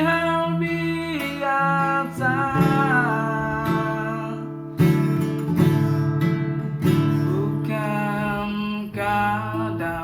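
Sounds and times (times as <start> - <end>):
person singing: 0.0 - 4.8, 7.0 - 10.0
acoustic guitar strumming: 0.0 - 10.0.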